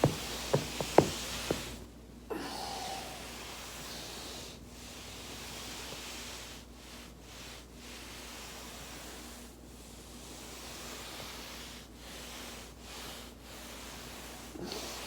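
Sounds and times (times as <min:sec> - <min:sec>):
back joint cracking: 0:00.0 - 0:01.8
soft rustling hiss: 0:00.0 - 0:02.0.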